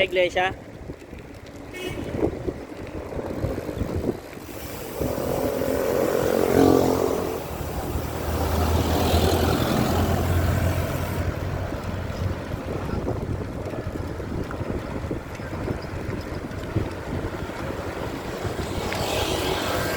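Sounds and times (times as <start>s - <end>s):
wind rushing over microphone: 0.0s - 19.9s
low engine hum: 3.8s - 19.0s
vehicle engine passing: 4.4s - 12.6s.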